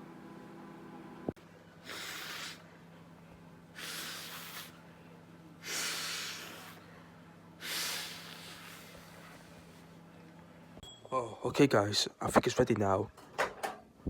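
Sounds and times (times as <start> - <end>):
microwave oven humming: 0.0 - 12.2
loud breaths close to microphone: 1.8 - 2.8, 3.7 - 9.9.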